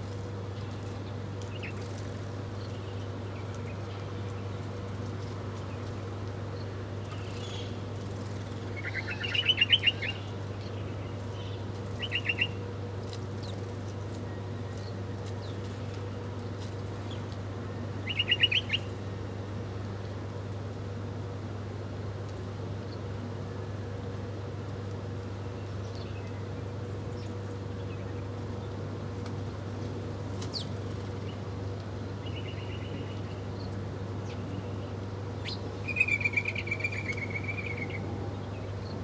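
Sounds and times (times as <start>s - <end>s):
small bird chirping: 11.9s - 12.6s, 35.4s - 38.0s.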